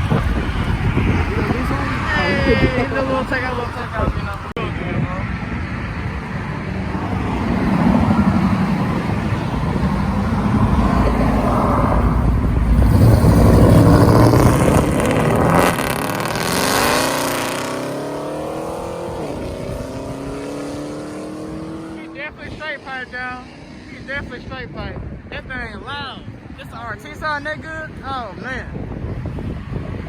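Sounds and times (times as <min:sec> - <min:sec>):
loud car exhaust accelerating: 0:05.4 - 0:22.5.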